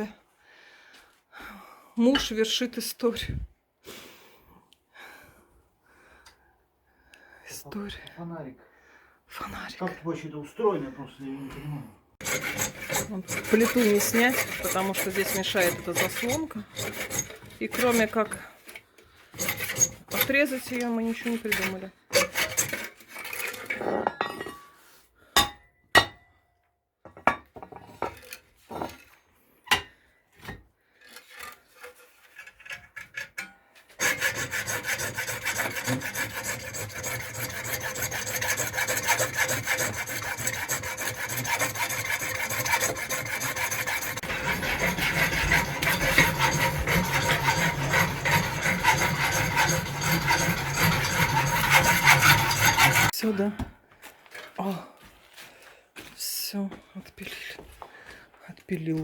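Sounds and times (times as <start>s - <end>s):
saw cutting through metal: 12.2s - 18.5s, 19.3s - 23.8s, 34.0s - 53.2s
knocks and handling sounds: 27.0s - 34.0s.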